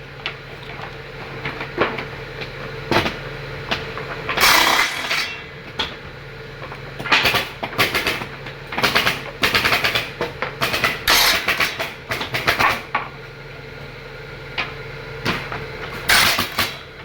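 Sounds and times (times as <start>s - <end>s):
woodworking machine humming: 2.2s - 7.0s.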